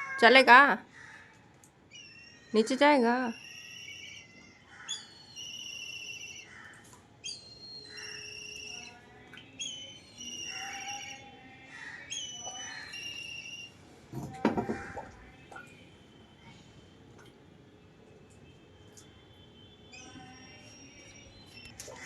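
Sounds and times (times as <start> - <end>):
small birds chirping: 1.9 - 13.8, 19.9 - 22.0.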